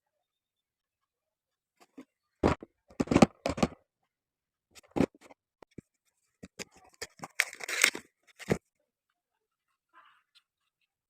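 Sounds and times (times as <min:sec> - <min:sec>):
packaging tearing: 0:07.1 - 0:08.6.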